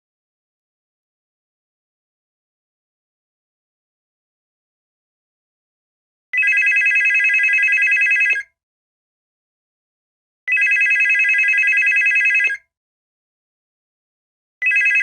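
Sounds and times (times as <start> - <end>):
telephone ringing with trill: 6.4 - 8.4, 10.5 - 12.6, 14.6 - 15.0.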